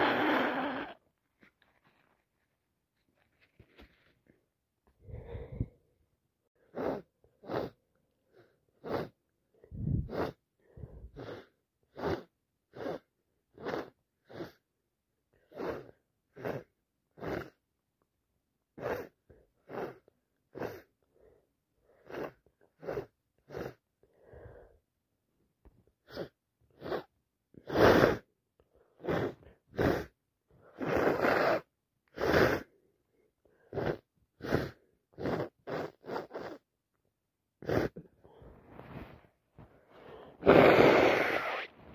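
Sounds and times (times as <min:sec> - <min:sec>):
person sniffling: 0:00.0 - 0:01.0, 0:06.6 - 0:14.6, 0:39.8 - 0:41.7.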